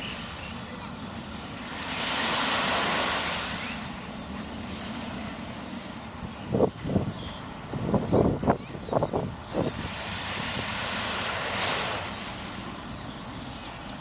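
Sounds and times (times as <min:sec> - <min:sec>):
steady sea noise: 0:00.0 - 0:14.0
wave washing in: 0:00.0 - 0:14.0.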